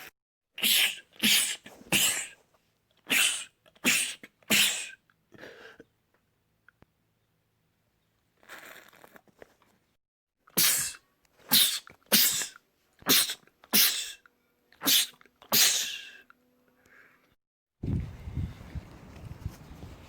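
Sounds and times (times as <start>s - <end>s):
man sneezing: 0.6s - 2.4s, 3.1s - 5.0s, 10.6s - 14.2s, 14.8s - 16.2s.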